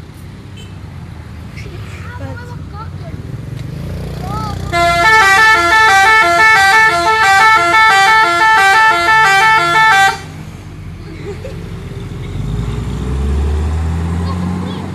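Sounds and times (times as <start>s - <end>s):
multi-tone truck horn melody: 4.7s - 10.4s.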